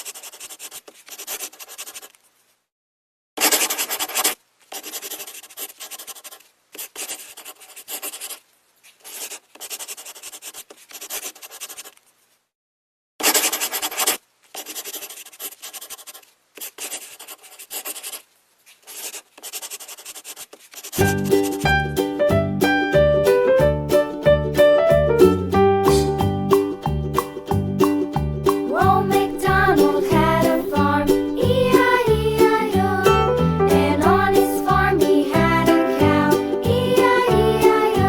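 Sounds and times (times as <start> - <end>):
drawing tool scratching on paper: 0.0 - 2.2, 3.4 - 12.0, 13.2 - 21.6.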